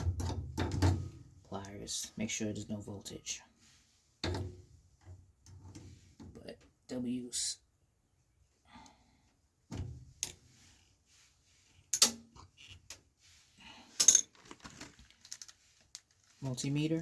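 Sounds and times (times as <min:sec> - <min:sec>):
metallic knocks and clicks: 0:00.0 - 0:01.2
light rattling of tools: 0:13.9 - 0:16.6.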